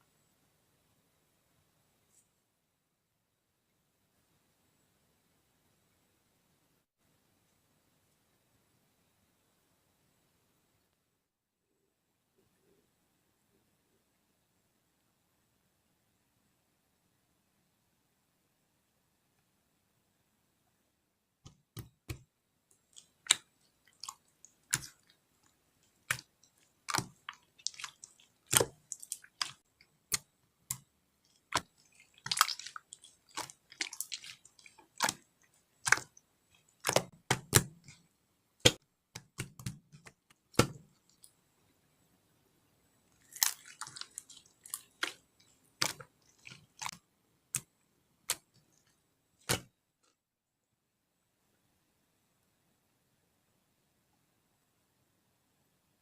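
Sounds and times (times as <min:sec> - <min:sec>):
wet crackling: 0:21.4 - 0:41.4, 0:43.0 - 0:49.7.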